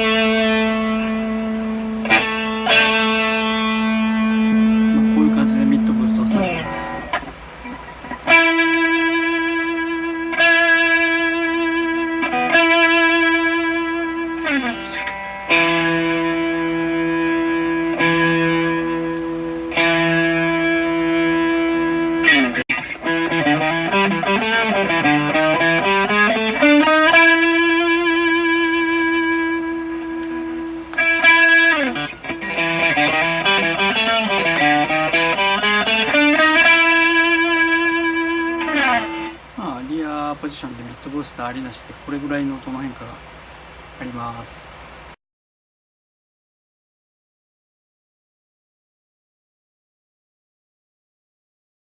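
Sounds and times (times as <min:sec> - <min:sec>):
electric guitar sustained notes: 0:00.0 - 0:40.0.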